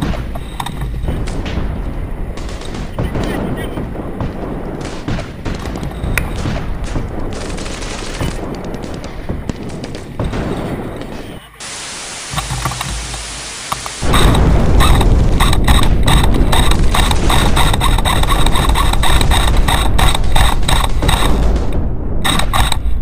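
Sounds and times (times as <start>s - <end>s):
airsoft guns firing: 0.0s - 23.0s
steady hiss: 0.0s - 23.0s
loud low rumble: 11.6s - 23.0s.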